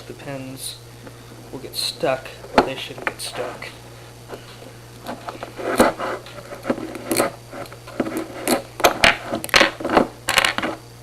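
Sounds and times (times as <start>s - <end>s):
lock pick scratching and clicking: 5.6s - 10.8s.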